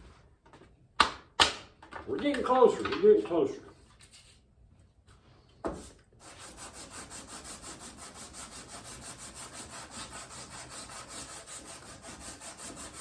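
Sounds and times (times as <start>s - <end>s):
metal sanding on sandpaper: 6.2s - 13.0s.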